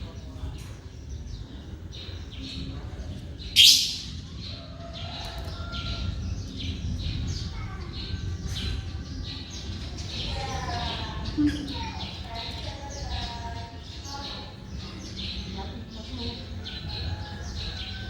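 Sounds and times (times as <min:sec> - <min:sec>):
birds chirping: 0:00.0 - 0:18.0
loud sharp bird call: 0:03.6 - 0:04.2.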